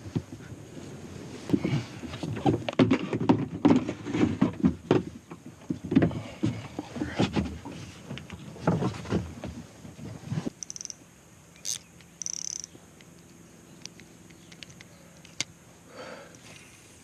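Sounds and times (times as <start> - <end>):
plastic kayak knocks and scrapes: 1.5 - 10.5.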